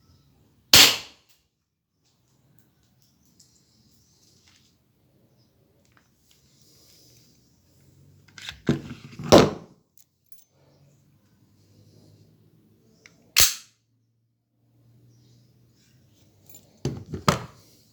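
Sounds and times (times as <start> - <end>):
airsoft pistol shots: 0.8 - 1.2, 13.4 - 13.7.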